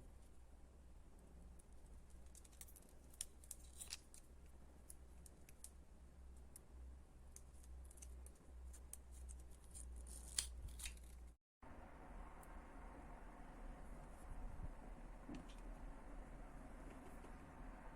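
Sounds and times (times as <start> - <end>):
steady low hum: 11.6 - 17.9.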